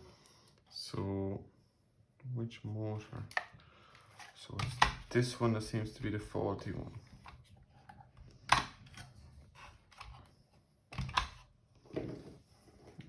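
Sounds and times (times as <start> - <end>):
plastic parts clicking and knocking: 4.5 - 5.3, 7.2 - 9.2, 10.9 - 11.5.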